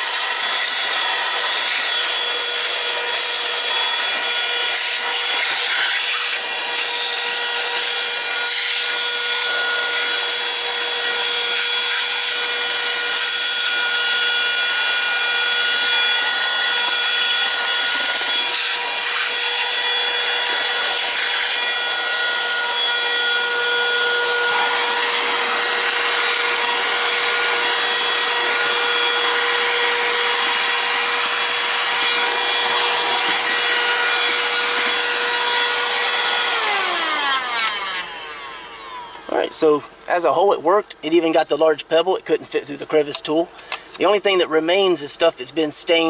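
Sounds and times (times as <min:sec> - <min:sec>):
handheld vacuum running: 0:00.0 - 0:40.0
vacuum motor spinning down: 0:21.5 - 0:39.6.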